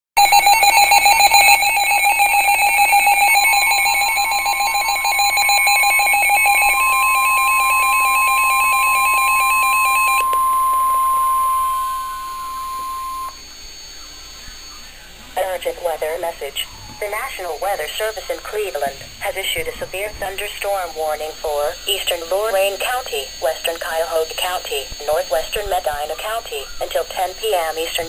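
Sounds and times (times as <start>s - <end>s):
pulsing electronic alarm: 0.2s - 28.0s
steady warning alarm tone: 0.2s - 28.0s.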